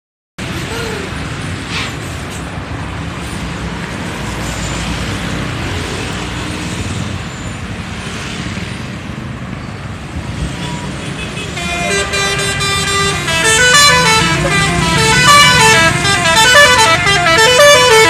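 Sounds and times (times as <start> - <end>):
road traffic noise: 0.4 - 18.0
bus engine running: 11.6 - 18.0.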